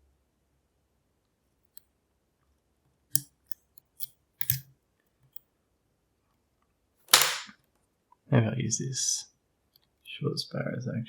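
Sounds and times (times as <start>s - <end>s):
lock picks clicking and scraping: 3.1s - 4.7s.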